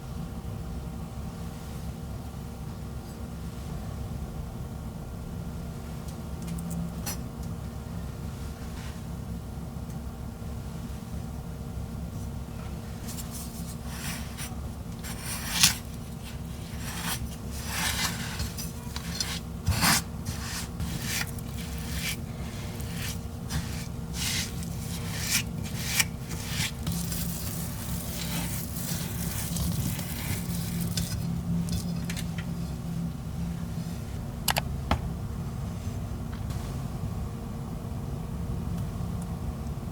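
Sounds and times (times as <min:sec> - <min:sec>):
utensil scraping a mixing bowl: 0:12.9 - 0:32.8.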